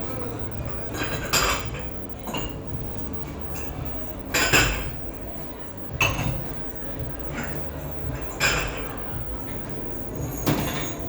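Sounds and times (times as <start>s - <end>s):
dishes and cutlery clattering: 10.3s - 11.0s.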